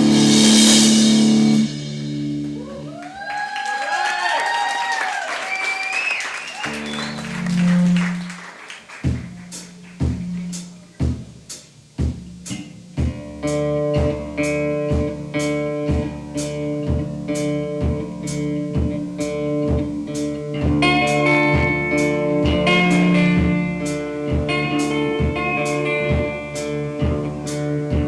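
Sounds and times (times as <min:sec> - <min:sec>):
kick drum beat: 0:09.0 - 0:11.4, 0:12.0 - 0:13.3.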